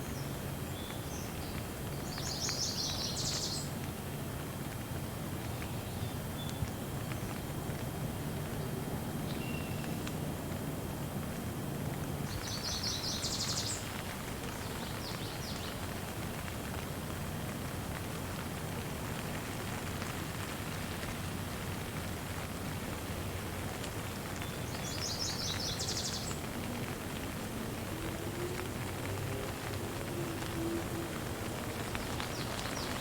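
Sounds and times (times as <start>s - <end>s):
steady rain falling: 0.0s - 33.0s.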